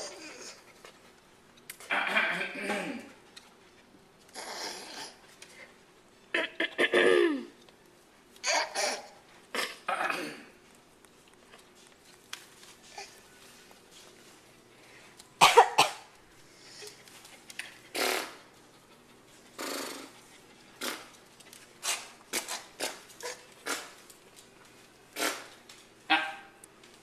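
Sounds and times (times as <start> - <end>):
person clearing throat: 1.9 - 3.2, 6.3 - 7.6, 8.8 - 10.6, 15.4 - 16.1.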